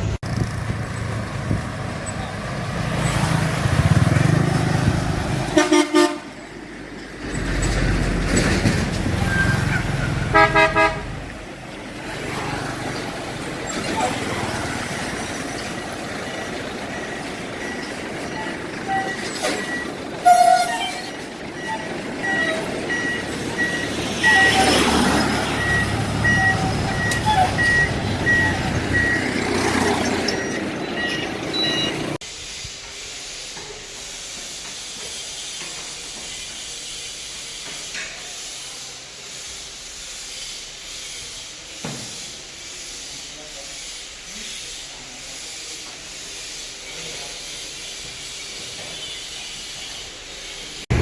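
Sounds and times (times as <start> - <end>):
heavy machinery running: 0.0 - 38.1, 44.0 - 51.0
reversing beeper: 14.3 - 32.2
steady hiss: 32.2 - 50.9.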